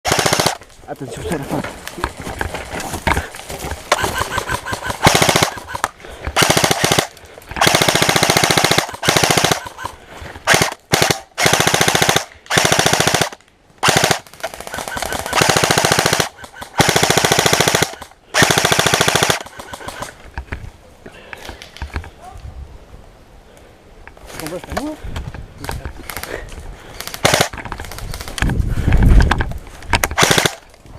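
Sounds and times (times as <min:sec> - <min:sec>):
airsoft guns firing full-auto bursts: 0:00.1 - 0:00.6, 0:03.9 - 0:20.1, 0:27.0 - 0:28.3, 0:30.2 - 0:30.6.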